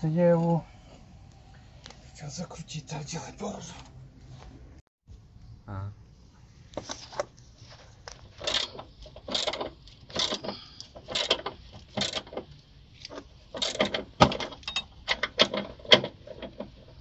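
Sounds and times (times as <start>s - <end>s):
ratchet wrench clicking: 8.4s - 12.3s.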